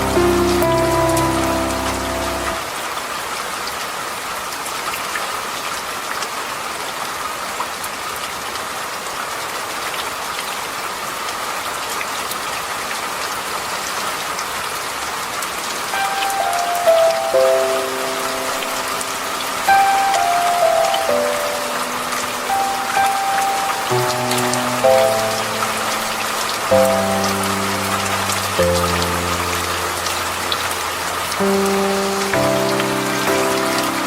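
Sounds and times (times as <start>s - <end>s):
soft musical notes: 0.0s - 2.7s, 15.9s - 34.0s
steady rain hiss: 0.0s - 34.0s
drips ticking: 15.9s - 34.0s.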